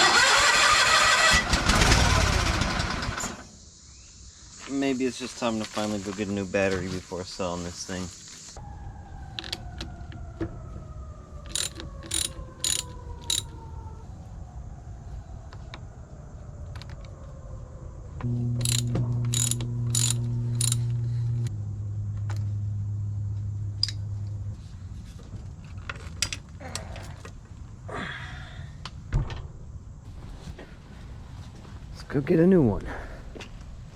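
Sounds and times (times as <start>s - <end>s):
starter clicking: 11.5s - 13.5s, 18.6s - 21.0s.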